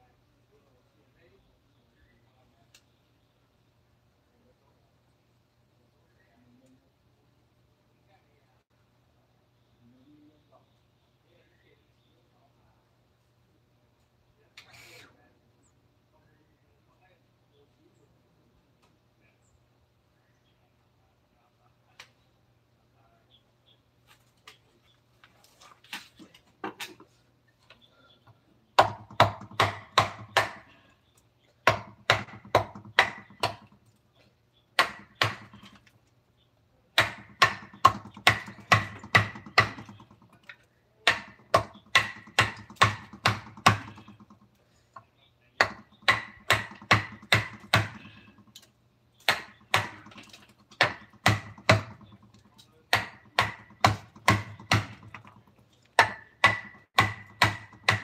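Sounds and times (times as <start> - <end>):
mallet striking chisel: 31.7 - 33.7, 34.8 - 35.7, 37.0 - 40.2, 41.0 - 44.3, 45.6 - 48.2, 49.2 - 50.2, 50.8 - 52.2, 52.9 - 55.3, 56.0 - 58.0.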